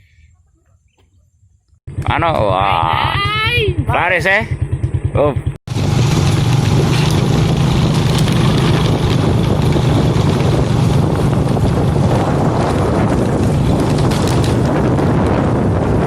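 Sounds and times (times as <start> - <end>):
small engine humming: 5.7 - 15.7
wind buffeting microphone: 5.7 - 16.0.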